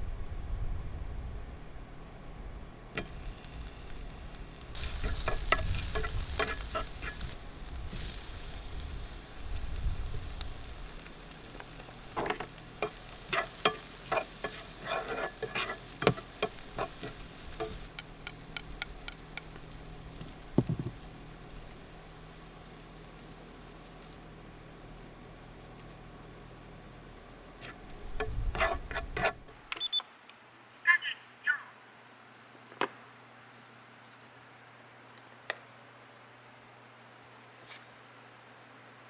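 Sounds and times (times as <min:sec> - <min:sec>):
food sizzling in a frying pan: 0:03.0 - 0:29.5
utensil scraping and knocking pan: 0:04.8 - 0:08.2, 0:12.1 - 0:19.2, 0:27.6 - 0:29.5.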